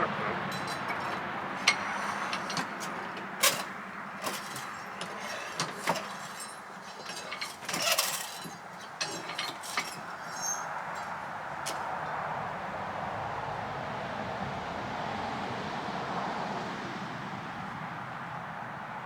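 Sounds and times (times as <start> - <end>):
metallic clinks and knocks of tools: 0.5 - 11.8.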